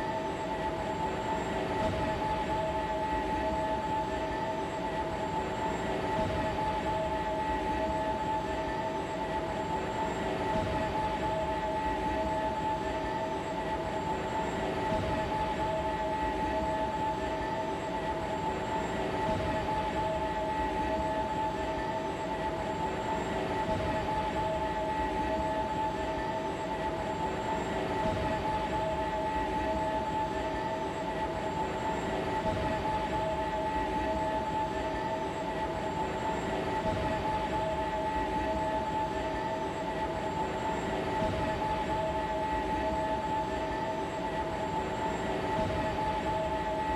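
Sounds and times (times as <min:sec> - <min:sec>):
machinery drone: 0:00.0 - 0:46.9.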